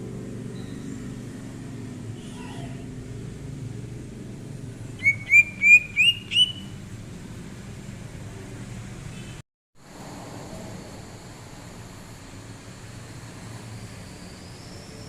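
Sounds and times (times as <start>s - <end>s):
bird chirps: 0.5s - 1.1s, 5.0s - 6.8s
bird whistled notes: 5.0s - 6.8s.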